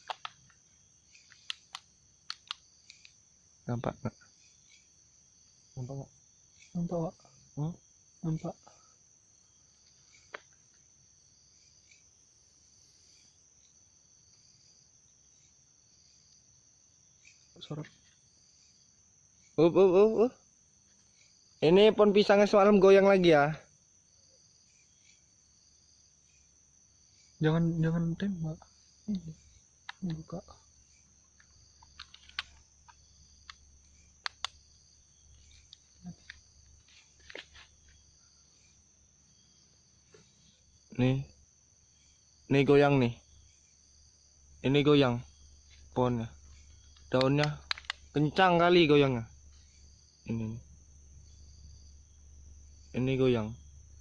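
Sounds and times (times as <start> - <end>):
sharp click: 0.0 - 0.6, 1.2 - 3.2, 34.2 - 34.6, 46.9 - 48.1
sharp clicks: 0.0 - 3.2, 29.8 - 30.2, 31.4 - 34.7, 46.9 - 48.2
crickets chirring: 0.0 - 54.0.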